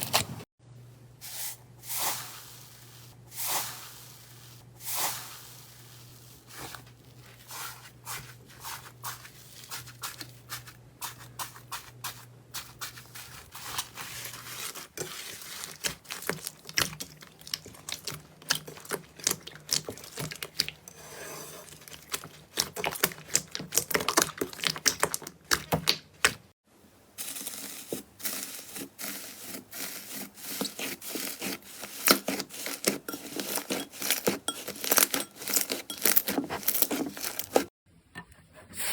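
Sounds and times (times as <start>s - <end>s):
slime crackling and popping: 22.0s - 26.0s.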